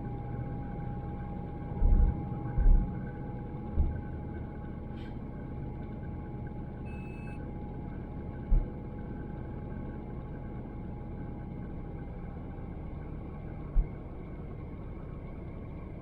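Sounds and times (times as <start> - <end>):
engine and road rumble: 0.0 - 16.0
thin constant whistle: 5.9 - 8.0
short electronic beep: 6.9 - 7.4.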